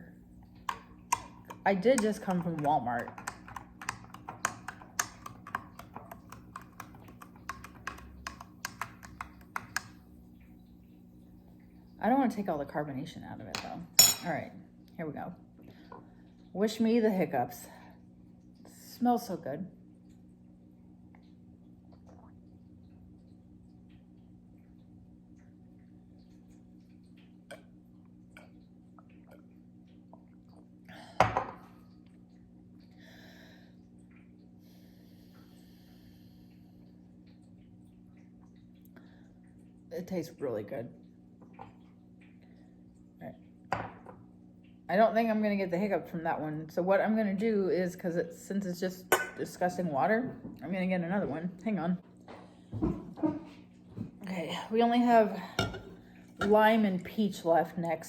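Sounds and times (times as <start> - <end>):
mouth and glass ticks: 0.6 - 10.1
spoon clinking against glass: 14.0 - 14.3, 55.6 - 56.0.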